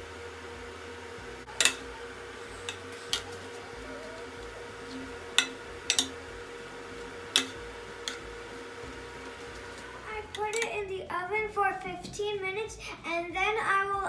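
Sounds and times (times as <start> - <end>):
steady low hum: 0.0 - 14.0
dishes and utensils clinking: 1.5 - 6.4, 7.3 - 10.8.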